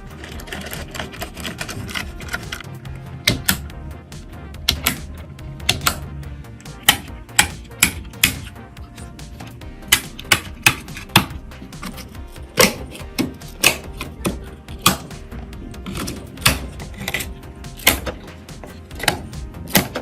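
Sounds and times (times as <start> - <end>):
computer parts clicking and tapping: 0.0 - 9.1, 9.8 - 20.0
background music: 0.0 - 20.0.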